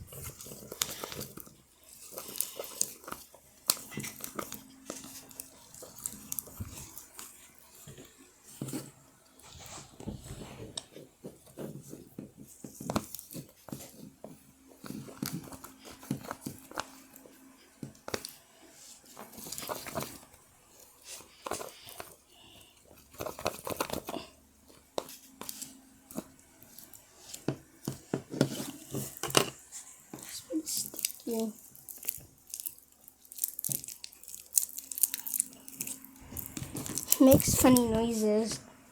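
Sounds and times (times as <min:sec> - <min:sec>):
slime squelching: 0:00.0 - 0:08.1, 0:25.0 - 0:38.6.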